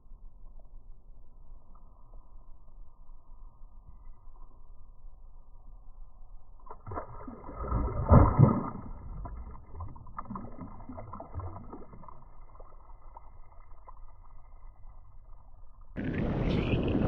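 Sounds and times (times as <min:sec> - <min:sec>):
muffled wind: 0:07.8 - 0:17.0.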